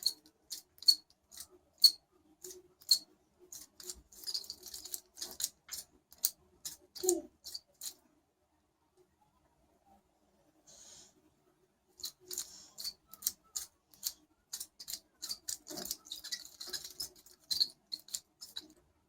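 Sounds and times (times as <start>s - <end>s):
metal watch bracelet creaking: 0.0s - 8.0s, 12.0s - 18.7s.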